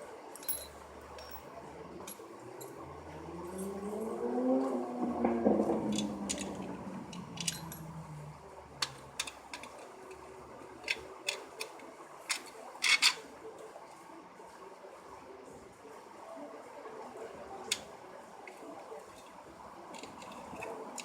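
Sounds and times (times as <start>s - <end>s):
low hum: 0.9s - 10.7s
clicks of small hard objects: 20.0s - 21.0s.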